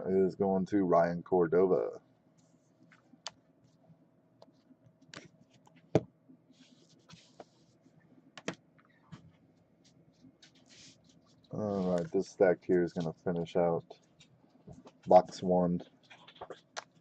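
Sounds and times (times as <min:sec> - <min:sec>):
soft rustling of plastic sleeves: 0:02.2 - 0:08.2, 0:08.8 - 0:17.0
faint clicks and taps of cards: 0:08.4 - 0:12.1, 0:13.9 - 0:17.0.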